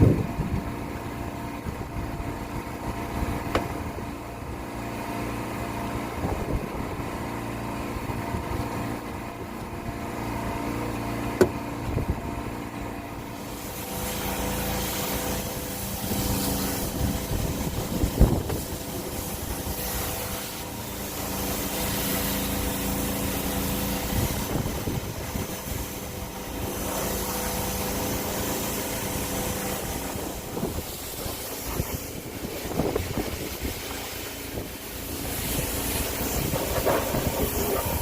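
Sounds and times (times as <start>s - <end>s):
pump motor humming: 0.0s - 38.0s
water spraying hiss: 13.2s - 38.0s.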